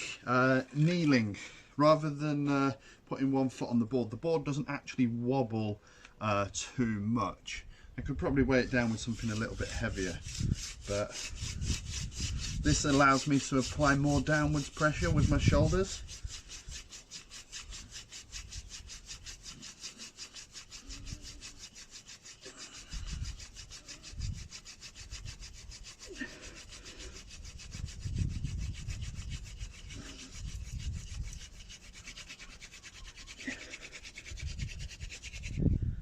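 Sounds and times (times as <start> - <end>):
wooden spindle rasping on board: 8.7 - 35.7.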